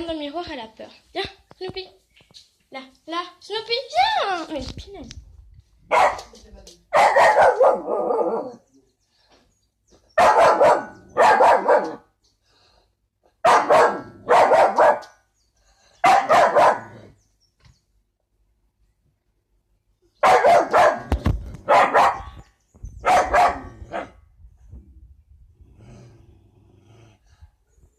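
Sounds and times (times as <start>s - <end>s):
dog barking: 5.9s - 6.3s, 6.9s - 8.6s, 10.2s - 12.1s, 13.4s - 15.1s, 16.0s - 17.1s, 20.2s - 22.4s, 23.0s - 24.2s.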